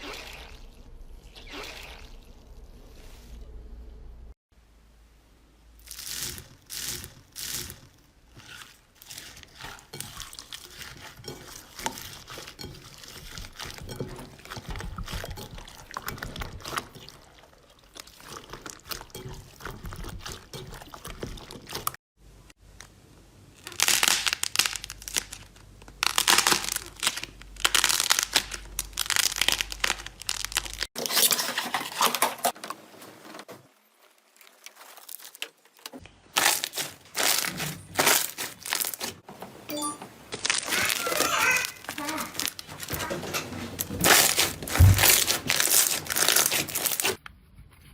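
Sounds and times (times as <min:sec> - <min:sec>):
slime crinkling and crackling: 0:05.8 - 0:22.0, 0:23.5 - 0:32.6, 0:33.7 - 0:39.2, 0:40.3 - 0:47.2.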